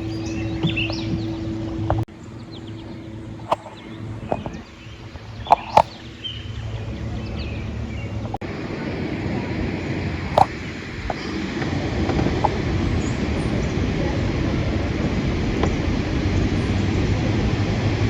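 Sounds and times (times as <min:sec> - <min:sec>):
paddle knocking against hull: 0:00.0 - 0:01.4.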